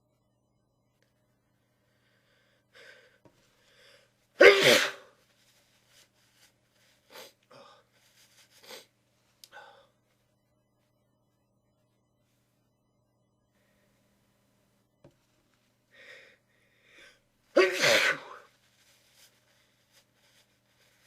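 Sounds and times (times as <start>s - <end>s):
faint breaths drawing in: 1.4s - 4.3s, 15.7s - 17.4s
person sneezing: 4.4s - 5.2s, 17.6s - 18.5s.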